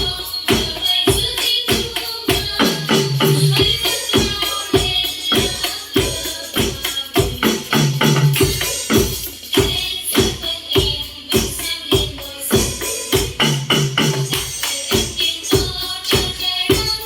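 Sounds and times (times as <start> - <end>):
instrumental music with steady beat: 0.0 - 17.0.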